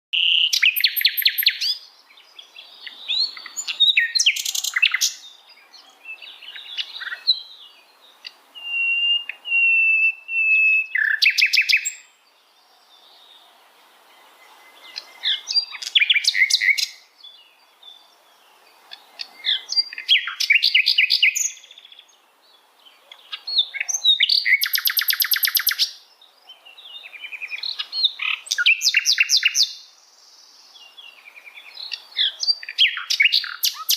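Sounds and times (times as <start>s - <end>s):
bird singing buzzy trills: 0.2s - 33.9s
bird whistled notes: 8.6s - 12.0s, 24.2s - 25.8s.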